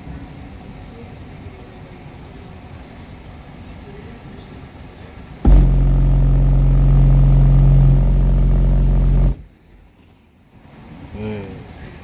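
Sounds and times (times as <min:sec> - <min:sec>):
subwoofer bass tone drone: 0:05.5 - 0:09.5.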